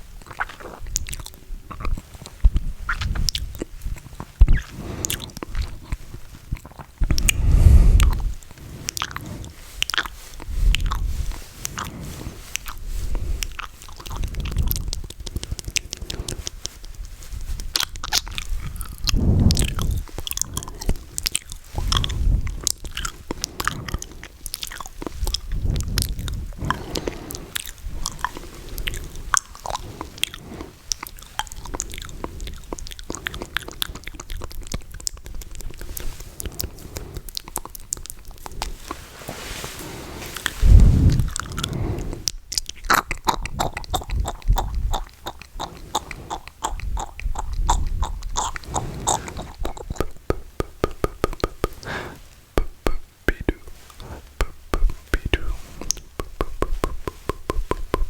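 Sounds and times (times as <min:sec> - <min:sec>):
wet mouth clicks and smacks: 0:00.2 - 0:11.9, 0:12.5 - 0:16.6, 0:17.6 - 0:39.0, 0:41.1 - 0:58.0
low thumps on microphone: 0:40.6 - 0:41.4.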